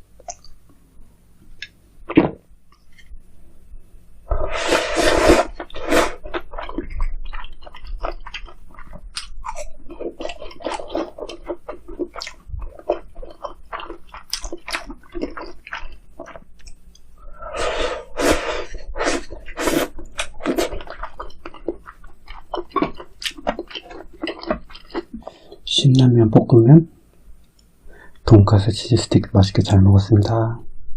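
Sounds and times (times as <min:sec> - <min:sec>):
person chewing and biting: 0:04.3 - 0:17.1, 0:18.2 - 0:25.6.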